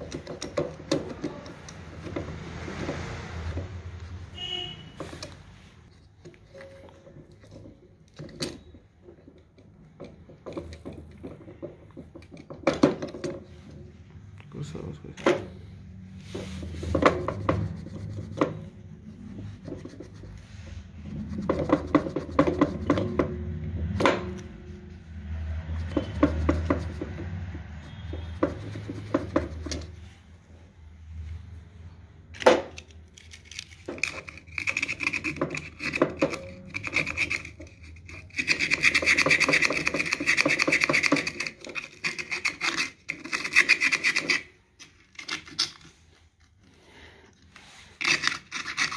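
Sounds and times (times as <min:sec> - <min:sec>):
sandpaper scraping metal parts: 0:16.2 - 0:23.1, 0:33.1 - 0:46.2, 0:47.5 - 0:48.9.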